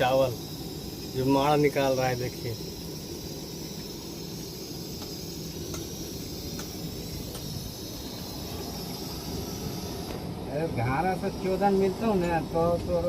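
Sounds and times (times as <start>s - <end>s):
steady high hiss: 0.0s - 13.0s.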